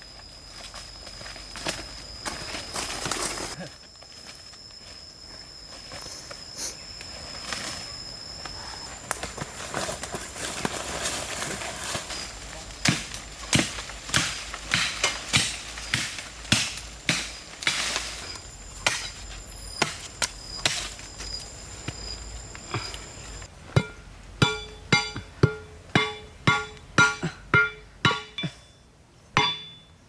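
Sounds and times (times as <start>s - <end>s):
blade chopping wood: 12.8s - 18.1s
ringing pitched knocks: 23.8s - 28.8s, 29.4s - 30.0s.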